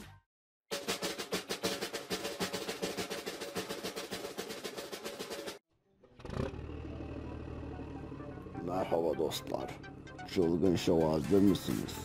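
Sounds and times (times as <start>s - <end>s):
fast snare drum roll: 0.7s - 5.6s
low background music: 6.6s - 12.0s.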